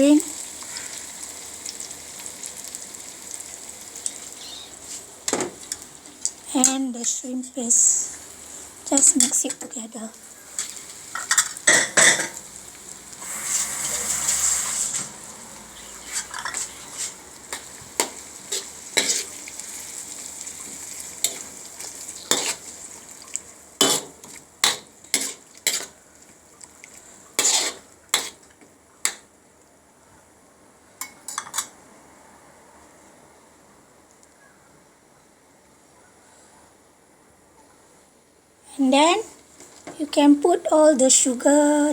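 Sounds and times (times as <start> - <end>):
faint sizzle: 0.0 - 41.9
utensil stirring wet mixture: 13.0 - 29.2
utensil scraping pan: 13.2 - 19.4, 21.2 - 22.8, 23.8 - 26.0, 27.4 - 28.5.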